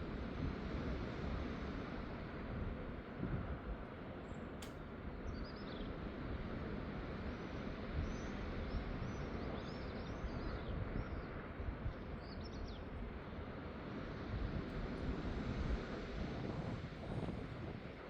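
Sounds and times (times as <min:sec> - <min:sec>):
wind noise on microphone: 0:00.0 - 0:03.8, 0:14.1 - 0:18.0.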